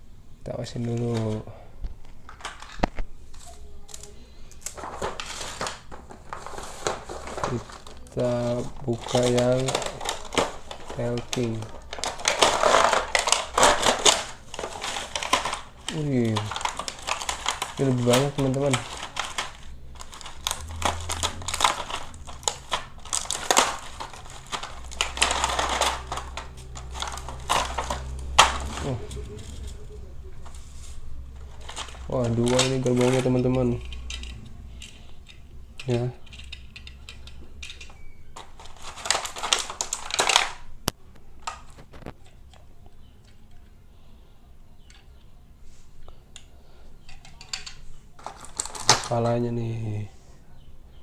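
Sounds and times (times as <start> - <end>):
plastic packaging crinkling: 2.0 - 43.6, 47.0 - 50.0
toy parts clicking and knocking: 2.2 - 29.8, 31.4 - 40.7, 44.8 - 45.3, 46.3 - 49.4.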